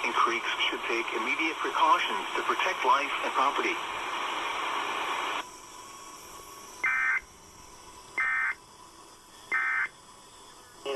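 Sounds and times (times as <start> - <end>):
static hiss: 0.0 - 10.9
electronic data screeches: 6.8 - 7.3, 8.2 - 8.6, 9.5 - 9.9.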